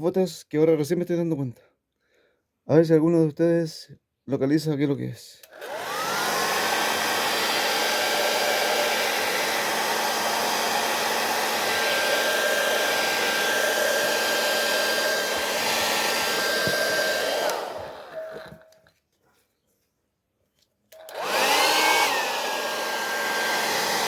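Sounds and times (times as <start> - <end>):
heat gun blowing with whine: 5.4 - 18.8, 20.9 - 24.0.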